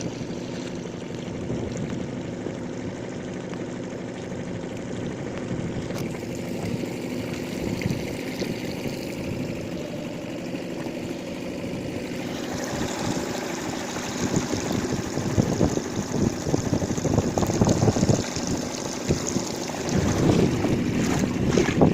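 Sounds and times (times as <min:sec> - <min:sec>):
wind buffeting microphone: 0:05.4 - 0:10.1, 0:11.7 - 0:21.9.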